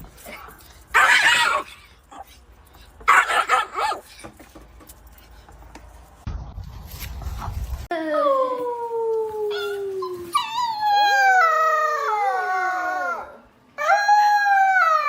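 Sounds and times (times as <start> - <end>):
dog howling: 10.6 - 15.0.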